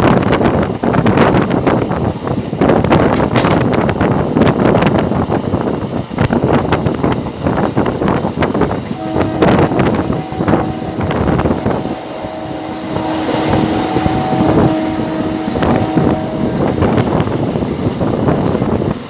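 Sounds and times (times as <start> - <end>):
train rumble and wheel clatter: 0.0 - 19.0
wind on microphone: 0.0 - 19.0
train horn long blast: 8.9 - 18.2.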